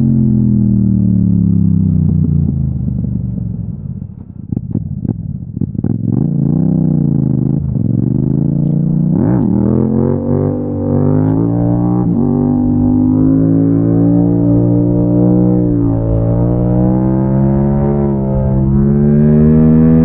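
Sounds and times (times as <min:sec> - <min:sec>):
motorcycle engine revving: 0:04.4 - 0:20.0
exhaust crackles: 0:11.2 - 0:20.0.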